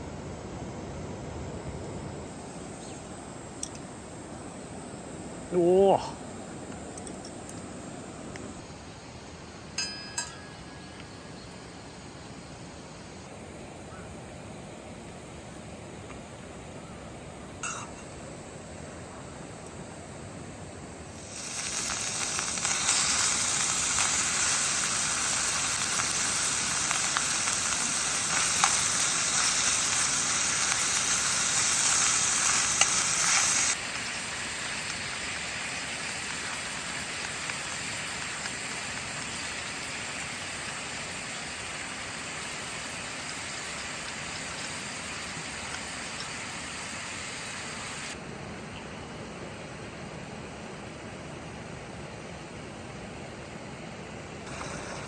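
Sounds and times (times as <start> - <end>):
food sizzling in a frying pan: 21.1 - 48.2, 54.5 - 55.0.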